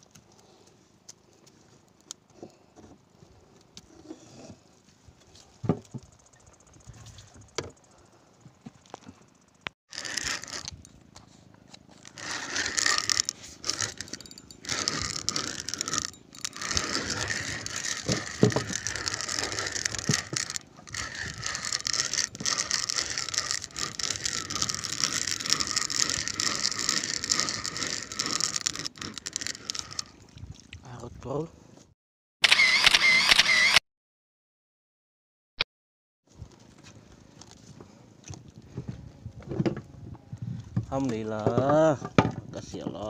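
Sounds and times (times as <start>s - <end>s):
fishing reel clicking and whirring: 9.3s - 11.1s, 11.8s - 30.3s.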